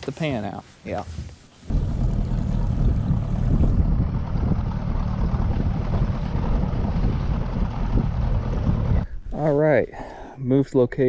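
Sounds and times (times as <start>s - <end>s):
wind buffeting microphone: 1.1s - 9.3s
hull on water: 1.7s - 9.0s
outboard engine running: 1.7s - 9.0s.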